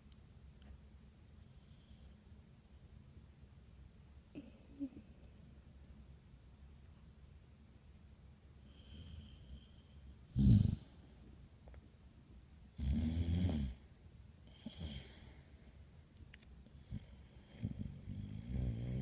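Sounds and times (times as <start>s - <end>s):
heavy snoring: 10.4s - 11.0s, 12.8s - 13.8s, 16.8s - 19.0s.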